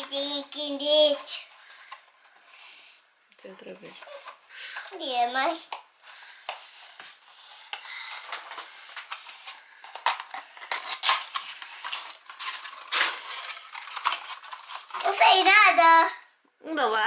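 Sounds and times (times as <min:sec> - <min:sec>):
packaging crinkling and clicking: 0:06.5 - 0:15.5.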